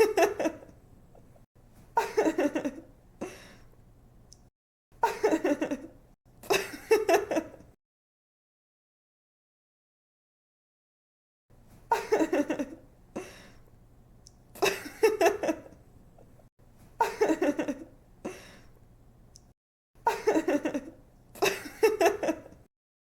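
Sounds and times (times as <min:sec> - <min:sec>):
woman giggling: 0:00.0 - 0:00.7, 0:02.0 - 0:02.9, 0:05.0 - 0:05.9, 0:11.9 - 0:12.8, 0:14.6 - 0:15.7, 0:17.0 - 0:17.9, 0:20.1 - 0:22.6.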